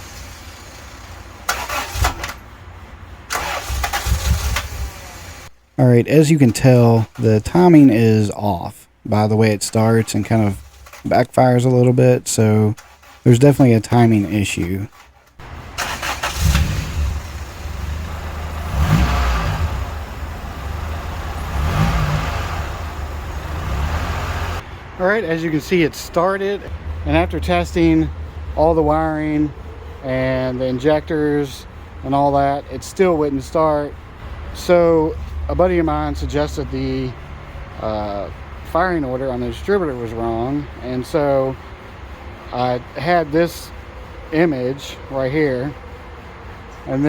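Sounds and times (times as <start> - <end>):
engine cranking: 0.0 - 5.5, 9.4 - 24.6
engine backfiring: 0.0 - 5.6, 9.2 - 47.0.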